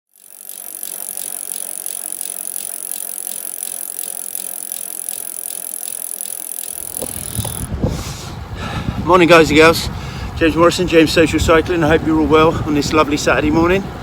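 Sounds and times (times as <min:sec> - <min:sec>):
bicycle bottom bracket creaking: 0:00.1 - 0:07.8
wind or road noise rumble: 0:06.7 - 0:14.0.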